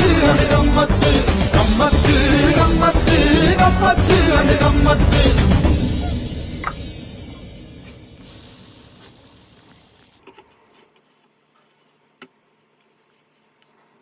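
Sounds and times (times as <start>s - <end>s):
batter sizzling on a griddle: 8.2s - 10.4s.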